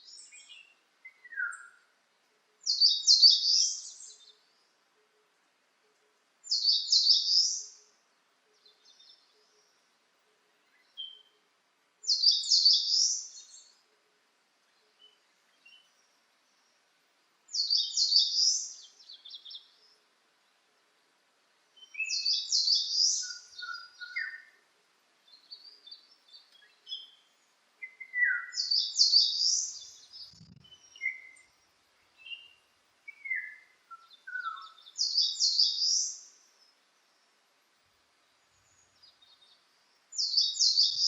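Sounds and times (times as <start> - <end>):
songbird singing high phrase: 0.0 - 1.9, 2.6 - 4.7, 6.4 - 9.7, 10.7 - 11.4, 12.0 - 13.8, 17.5 - 20.0, 21.8 - 24.6, 25.3 - 37.2, 38.3 - 41.0.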